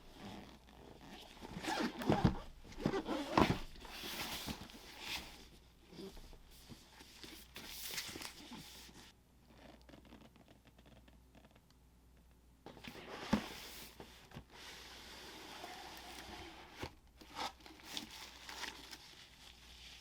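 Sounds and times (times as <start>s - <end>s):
packaging rustling and crinkling: 15.6s - 20.0s.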